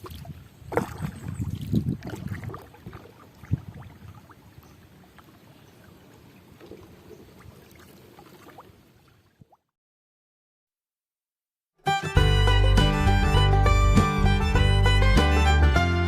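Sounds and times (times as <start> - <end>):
water splashing and sloshing: 0.0 - 9.7.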